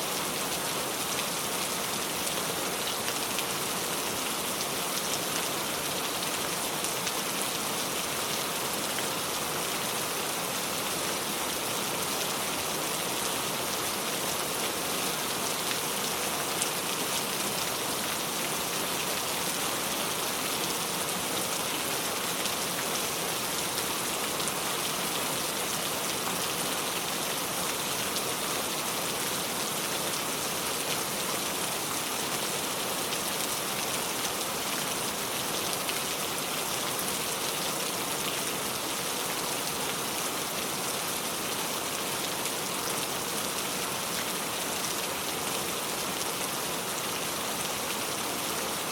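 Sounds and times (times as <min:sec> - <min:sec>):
rain falling on a surface: 0:00.0 - 0:48.9.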